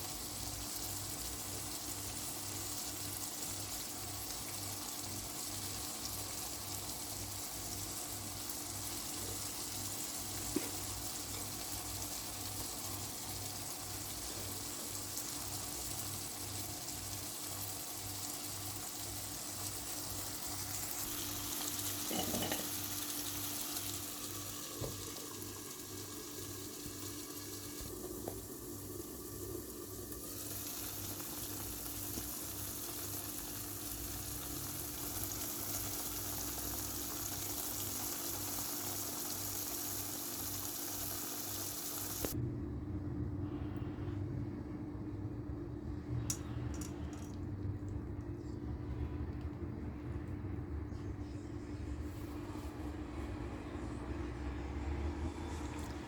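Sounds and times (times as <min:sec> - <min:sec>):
peppers sizzling in a pan: 0:00.0 - 0:42.4, 0:46.3 - 0:47.4.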